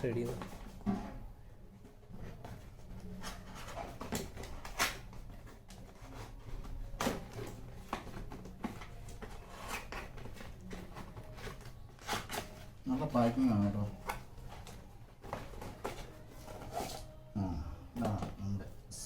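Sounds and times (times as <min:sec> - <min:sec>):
cardboard and plastic crackling: 0:01.9 - 0:17.2.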